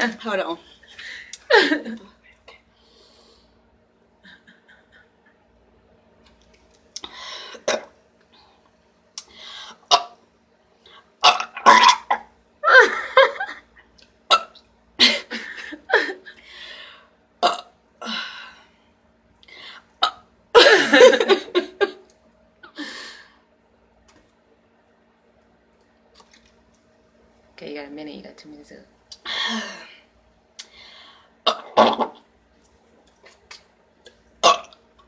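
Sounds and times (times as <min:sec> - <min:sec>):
woman burping: 0:09.9 - 0:10.2, 0:11.2 - 0:12.3, 0:17.4 - 0:18.2, 0:31.4 - 0:32.2, 0:34.4 - 0:34.8.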